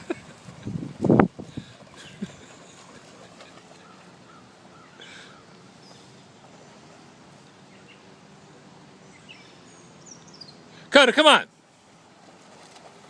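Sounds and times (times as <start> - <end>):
outdoor background hiss: 0.0 - 13.0
small birds chirping: 1.6 - 10.9.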